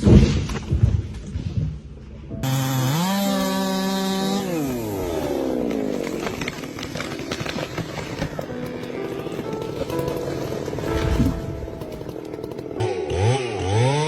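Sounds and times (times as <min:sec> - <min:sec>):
chainsaw engine revving: 0:02.4 - 0:14.0.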